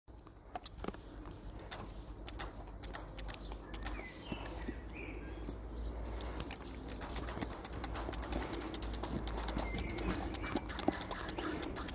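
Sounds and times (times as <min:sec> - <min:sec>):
animal drinking water: 0:00.4 - 0:05.2, 0:06.1 - 0:11.9.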